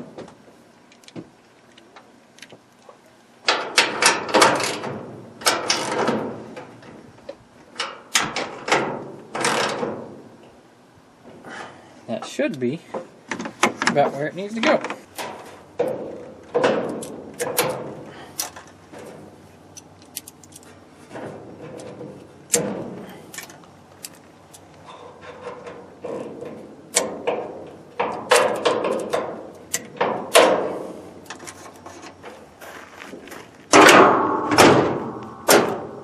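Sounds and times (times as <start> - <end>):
metallic clanks and clicks: 14.6 - 32.2, 33.7 - 36.0.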